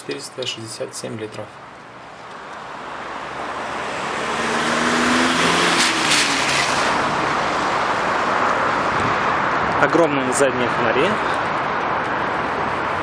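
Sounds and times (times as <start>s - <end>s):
traffic noise: 0.0s - 13.0s
vehicle passing close by: 2.6s - 10.0s.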